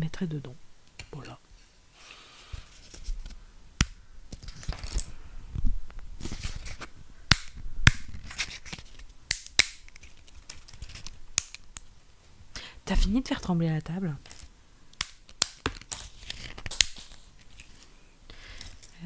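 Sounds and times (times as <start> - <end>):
dry pasta snapping: 3.8 - 4.7, 7.3 - 11.9, 14.3 - 17.7.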